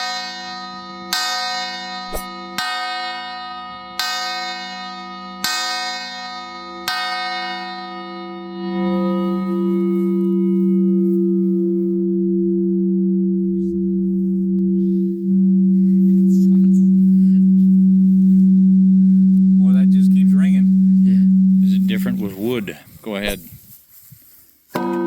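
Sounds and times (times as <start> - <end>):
deep steady hum: 10.4 - 23.4.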